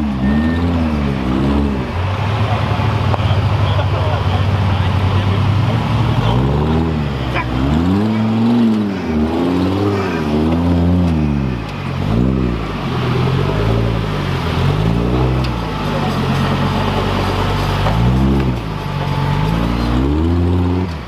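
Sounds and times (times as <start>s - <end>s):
engine revving: 0.0s - 21.0s.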